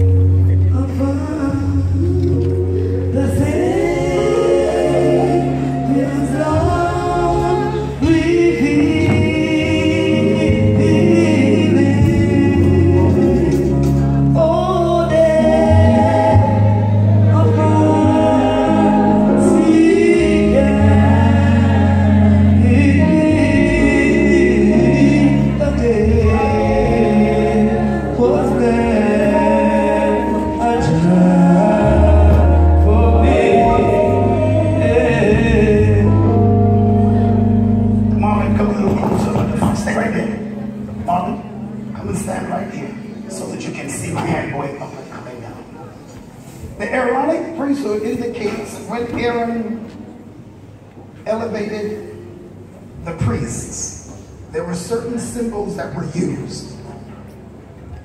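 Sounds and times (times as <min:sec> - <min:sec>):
bass holding low notes: 0:00.0 - 0:45.0
gospel choir singing: 0:00.8 - 0:45.1.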